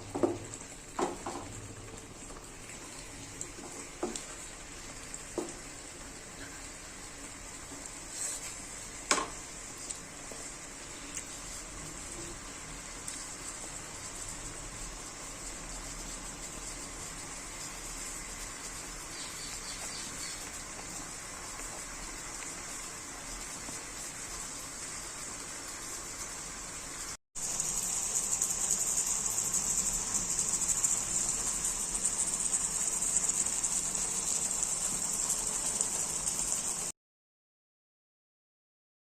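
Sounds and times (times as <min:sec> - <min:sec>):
insects trilling: 0:18.6 - 0:20.8.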